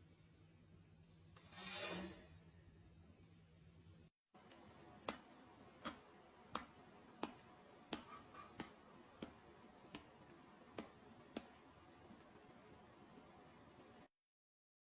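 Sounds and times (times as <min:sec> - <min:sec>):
faint hiss: 0:04.4 - 0:14.1.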